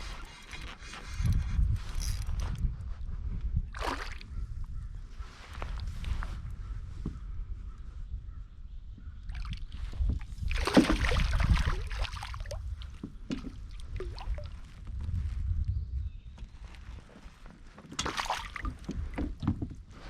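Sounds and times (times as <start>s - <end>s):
water lapping against kayak hull: 3.7s - 4.4s, 9.0s - 14.8s, 17.7s - 20.0s
water splashing: 10.4s - 12.7s, 17.9s - 19.2s
small knocks on hull: 10.5s - 11.9s, 12.8s - 14.3s, 17.9s - 19.8s.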